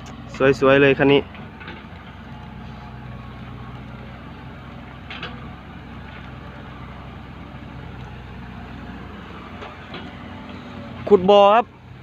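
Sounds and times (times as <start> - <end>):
vehicle engine running low: 0.0 - 12.0.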